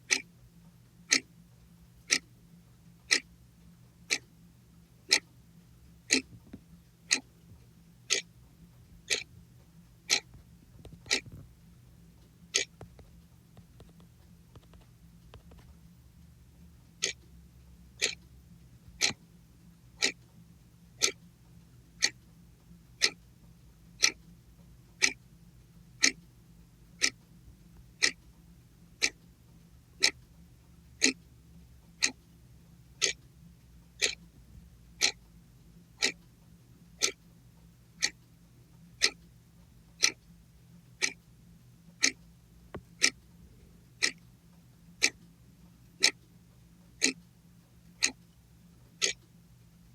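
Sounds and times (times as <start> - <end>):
faint low hum: 0.0 - 49.9
clock ticking: 1.1 - 1.3, 2.1 - 2.3, 3.0 - 3.3, 4.1 - 4.3, 5.1 - 5.3, 6.1 - 7.3, 8.1 - 8.3, 9.0 - 9.3, 10.1 - 10.3, 12.5 - 12.9, 17.0 - 17.3, 18.0 - 18.3, 19.0 - 19.2, 20.0 - 20.2, 21.0 - 21.2, 22.0 - 22.2, 22.9 - 23.2, 24.0 - 24.2, 25.0 - 25.2, 26.0 - 26.2, 27.0 - 27.2, 28.0 - 28.2, 29.0 - 29.2, 30.0 - 30.2, 31.0 - 31.3, 32.0 - 32.3, 33.0 - 33.2, 34.0 - 34.2, 35.0 - 35.2, 36.0 - 36.3, 37.0 - 37.2, 38.0 - 38.2, 39.0 - 39.3, 40.0 - 40.2, 41.0 - 41.2, 42.0 - 42.2, 43.0 - 43.3, 44.0 - 44.2, 45.0 - 45.3, 46.0 - 46.2, 47.0 - 47.2, 48.0 - 48.2, 49.0 - 49.2.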